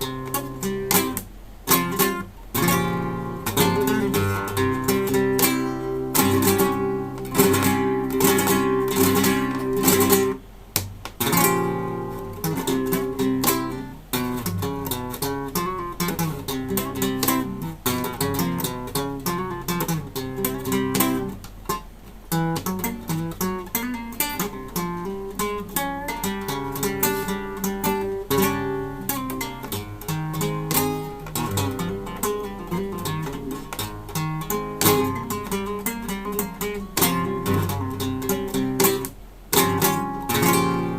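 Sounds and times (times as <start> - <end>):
acoustic guitar playing: 0.0 - 40.9.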